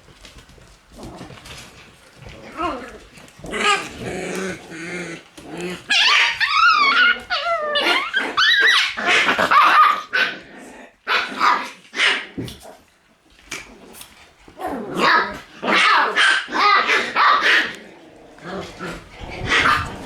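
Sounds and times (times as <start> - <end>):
puppies yapping and barking: 1.4 - 10.4, 18.5 - 20.0.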